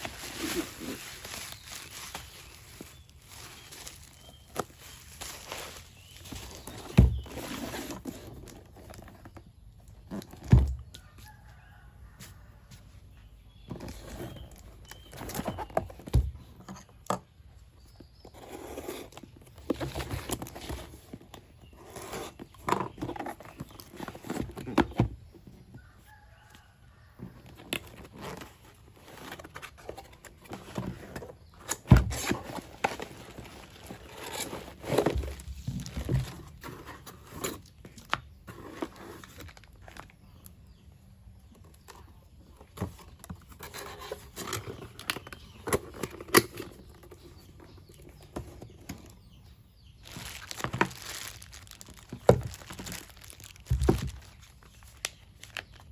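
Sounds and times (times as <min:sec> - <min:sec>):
packaging rustling: 0:00.0 - 0:09.3, 0:27.8 - 0:40.1, 0:50.0 - 0:55.9
knocks and clunks of box: 0:02.2 - 0:11.0, 0:13.6 - 0:17.3, 0:27.2 - 0:39.3, 0:53.6 - 0:54.3.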